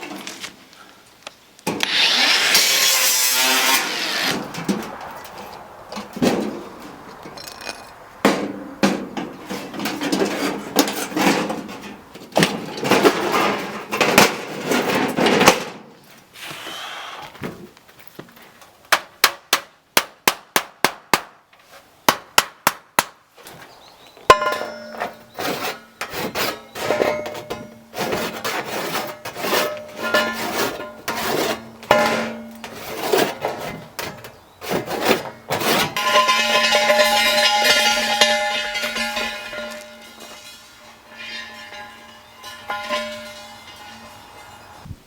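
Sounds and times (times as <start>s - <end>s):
rhythmic rasping on metal: 34.7s - 44.9s
hammer striking metal: 36.0s - 44.8s.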